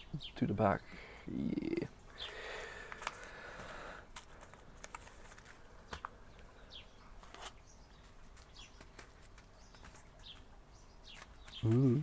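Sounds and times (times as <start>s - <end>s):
faint bird calls: 1.0s - 4.0s, 11.1s - 12.0s.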